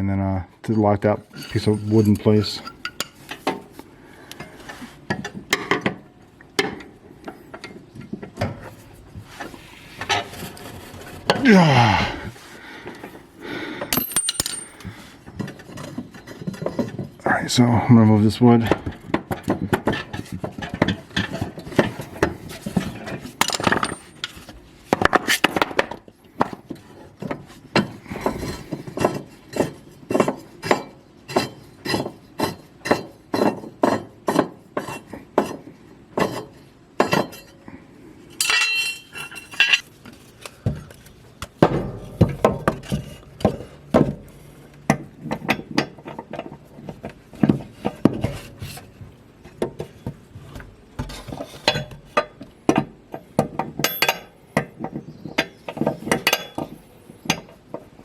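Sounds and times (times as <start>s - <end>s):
metallic clinks and knocks: 1.4s - 3.2s, 13.9s - 14.9s, 23.4s - 24.4s, 38.4s - 39.8s, 53.8s - 54.4s, 56.0s - 56.8s.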